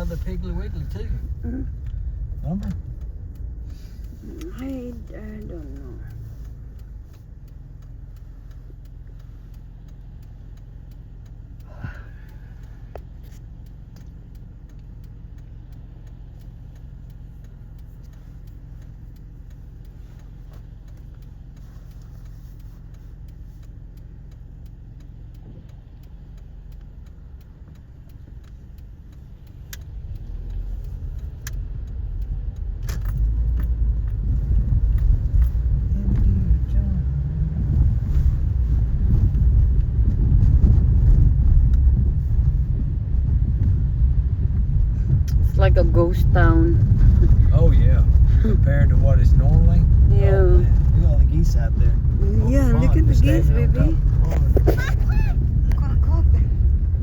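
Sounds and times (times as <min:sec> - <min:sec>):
car road noise rumble: 0:00.0 - 0:57.0
faint clicks: 0:00.1 - 0:36.7.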